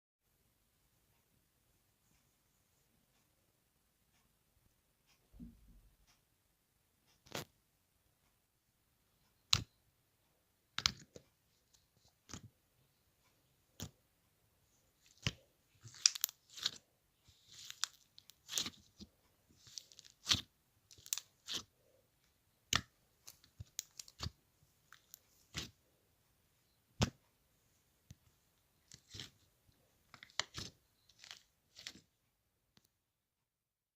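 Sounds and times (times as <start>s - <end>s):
crinkly crunchy rustling: 15.8s - 19.0s, 19.6s - 21.7s.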